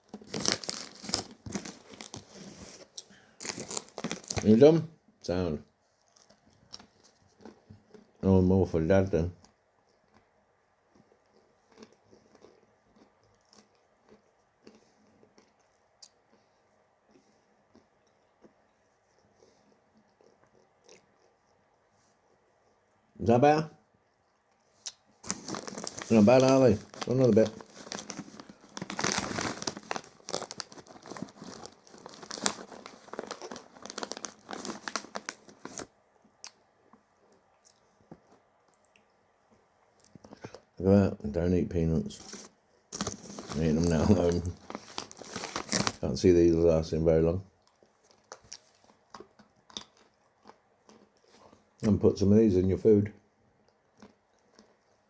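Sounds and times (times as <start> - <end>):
plastic snack packet crinkling: 0.0 - 4.8, 24.8 - 36.6, 42.0 - 46.9, 47.6 - 51.6, 53.9 - 55.0
nut being chewed: 6.1 - 8.2, 10.9 - 22.9, 47.6 - 51.6, 53.6 - 55.0.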